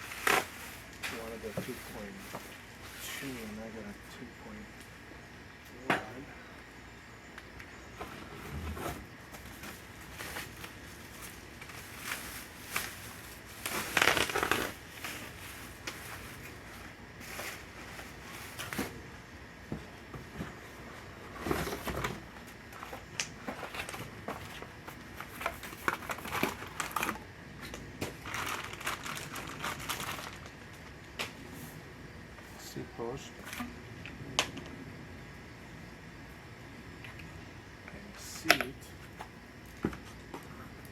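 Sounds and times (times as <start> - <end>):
packaging crinkling and rustling: 0.0 - 2.6, 8.6 - 19.0, 21.4 - 31.3.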